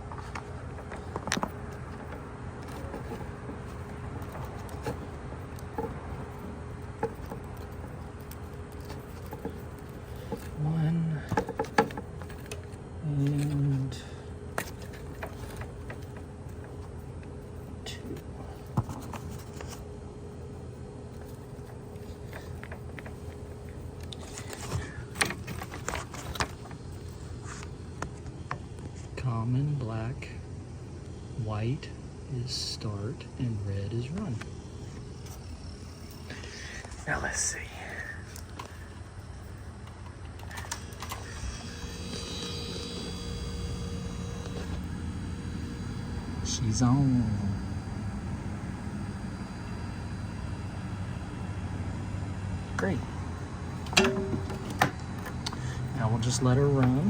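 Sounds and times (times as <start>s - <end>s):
wires and connectors clicking: 0.0s - 20.5s, 21.1s - 28.6s, 53.7s - 57.0s
low background hum: 0.0s - 57.0s.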